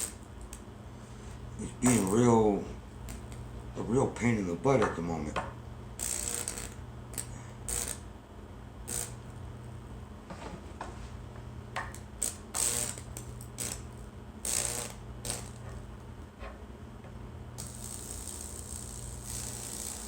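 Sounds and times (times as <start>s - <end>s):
high electrical hiss: 0.0s - 0.6s, 1.4s - 4.4s, 6.0s - 8.1s, 8.8s - 9.4s, 11.8s - 15.9s, 17.6s - 20.0s
sharp electrical snaps: 0.0s - 0.7s, 1.7s - 2.3s, 3.0s - 3.4s, 6.0s - 8.1s, 8.8s - 9.4s, 11.9s - 15.8s, 17.6s - 20.0s
transformer hum: 1.2s - 10.1s, 11.3s - 20.0s.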